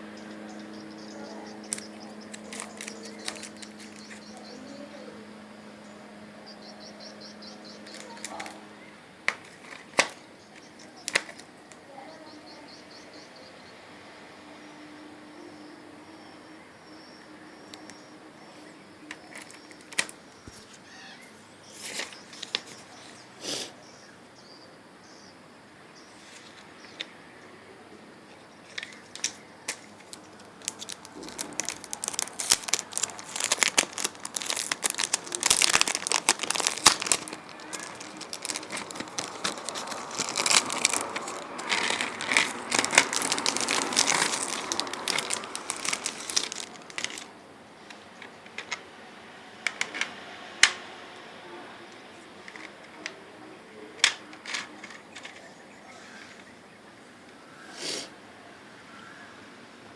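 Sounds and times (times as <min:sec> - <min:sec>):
plastic wrap crinkling and tearing: 0:01.6 - 0:04.4, 0:07.6 - 0:08.6, 0:09.3 - 0:10.2, 0:11.0 - 0:11.4, 0:19.1 - 0:20.2, 0:28.7 - 0:47.3.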